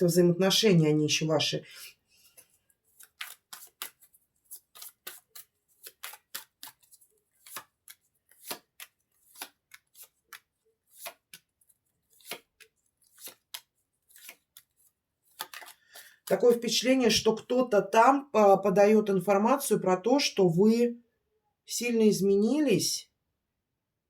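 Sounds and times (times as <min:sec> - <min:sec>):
cards being shuffled: 0:02.2 - 0:17.4.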